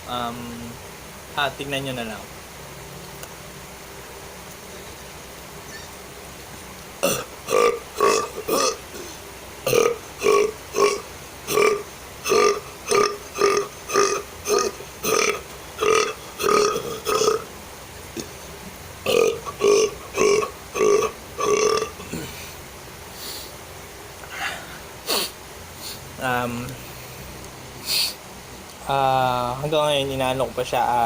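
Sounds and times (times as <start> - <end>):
man burping: 7.0 - 17.5, 19.0 - 22.6.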